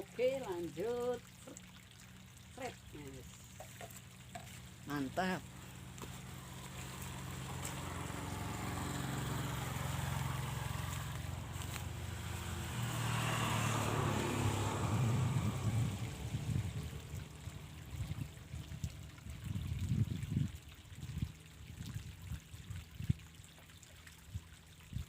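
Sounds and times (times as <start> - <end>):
passing motor vehicle engine: 4.8 - 19.6
low rumbles: 5.4 - 20.3.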